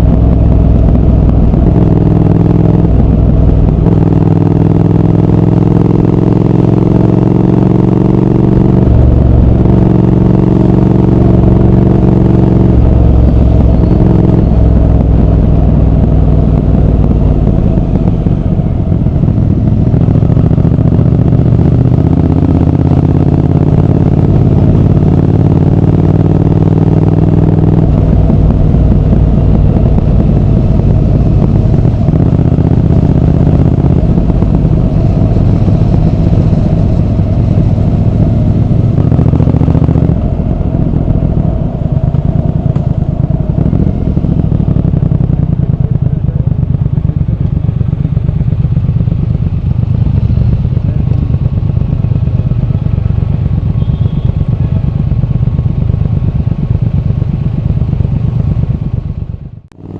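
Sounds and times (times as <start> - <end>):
motorcycle engine accelerating: 0.0 - 59.9.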